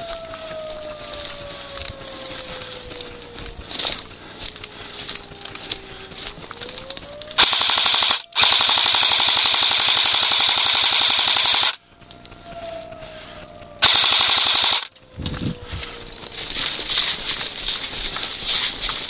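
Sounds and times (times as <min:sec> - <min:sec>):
airsoft rifle firing full-auto: 0:07.4 - 0:11.8, 0:13.8 - 0:14.9.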